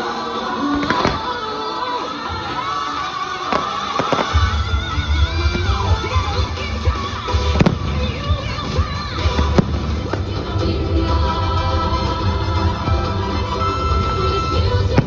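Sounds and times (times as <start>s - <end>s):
fireworks bursting: 0.0s - 15.0s
orchestral music over speakers: 0.0s - 15.0s.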